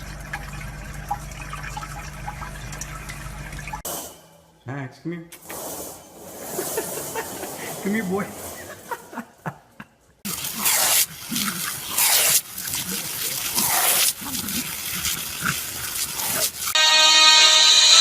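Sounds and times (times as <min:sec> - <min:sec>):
dog vocalizing: 0:10.3 - 0:16.7
music: 0:16.8 - 0:18.0.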